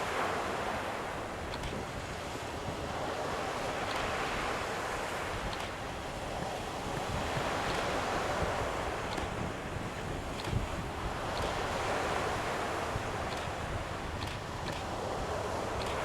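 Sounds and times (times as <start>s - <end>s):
waves washing onto beach: 0.0s - 16.0s
wind buffeting microphone: 5.3s - 16.0s.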